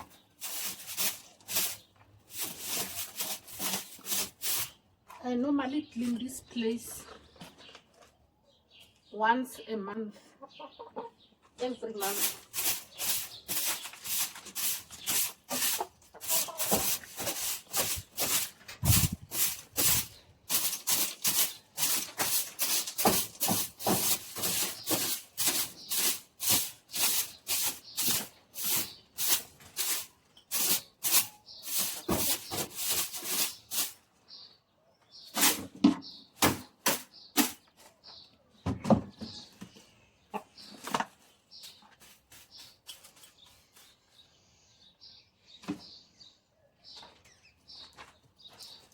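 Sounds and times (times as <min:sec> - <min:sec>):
broom sweeping floor: 0:00.0 - 0:04.8, 0:12.0 - 0:34.1, 0:35.3 - 0:35.8, 0:41.5 - 0:44.2.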